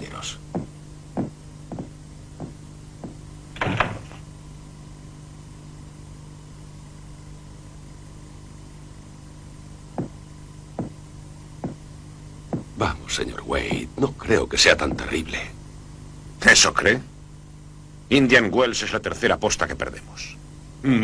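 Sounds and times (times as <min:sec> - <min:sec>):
steady low hum: 0:00.0 - 0:21.0
loud knock with rattle: 0:00.5 - 0:04.2, 0:10.0 - 0:10.2, 0:11.6 - 0:11.8, 0:12.5 - 0:12.8
soft knocks: 0:00.5 - 0:04.2, 0:10.0 - 0:10.2, 0:10.8 - 0:11.0, 0:11.6 - 0:11.8, 0:12.5 - 0:12.8.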